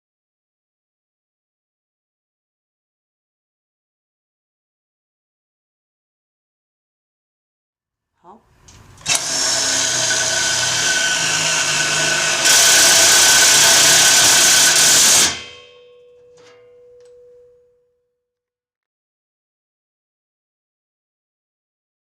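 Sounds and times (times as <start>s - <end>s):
impact driver running: 9.0s - 15.5s.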